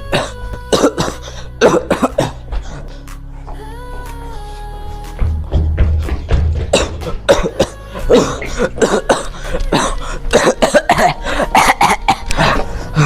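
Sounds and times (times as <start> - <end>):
person coughing harshly: 0.0 - 2.4, 6.7 - 13.0.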